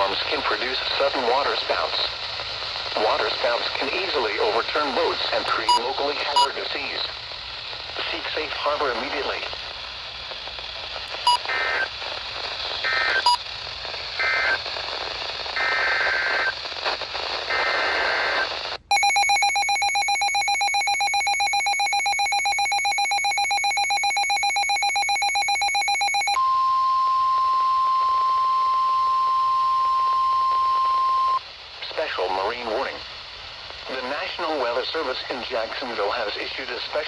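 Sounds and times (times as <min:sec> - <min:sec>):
radio static: 0:00.0 - 0:19.4, 0:31.4 - 0:37.0
pulsing electronic alarm beeps: 0:18.9 - 0:27.1
steady warning alarm tone: 0:18.9 - 0:29.8.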